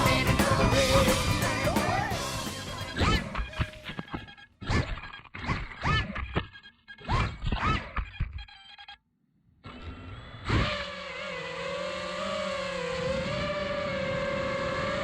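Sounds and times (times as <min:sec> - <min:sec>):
quadcopter motors whining: 0:09.7 - 0:15.0.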